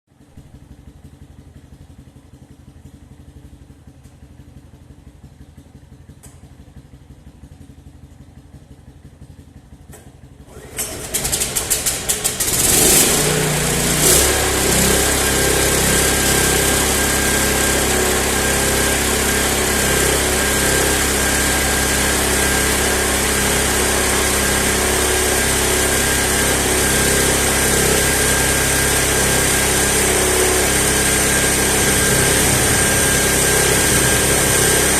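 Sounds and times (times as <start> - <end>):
air compressor running: 10.4 - 34.9
stationary engine running: 10.6 - 34.9.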